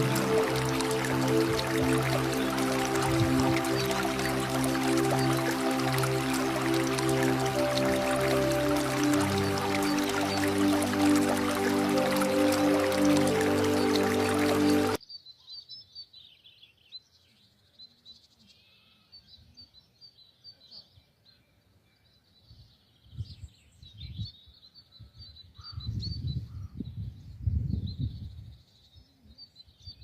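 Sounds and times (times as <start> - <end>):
music: 0.0 - 15.0.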